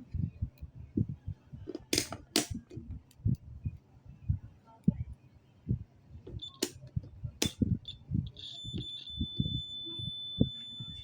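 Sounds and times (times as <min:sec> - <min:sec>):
multimeter beeping: 0:06.4 - 0:06.8, 0:07.4 - 0:11.0
probe clicks: 0:06.4 - 0:07.6.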